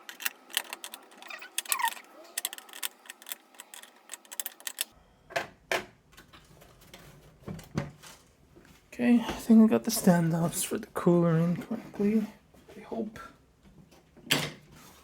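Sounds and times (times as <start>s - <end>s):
small metal parts clicking: 0.0s - 4.9s.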